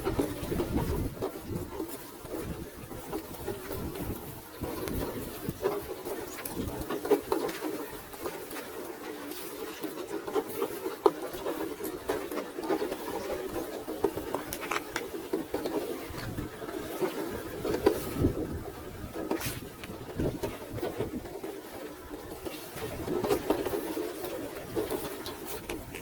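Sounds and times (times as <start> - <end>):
tyres clicking on rock: 14.0 - 16.4.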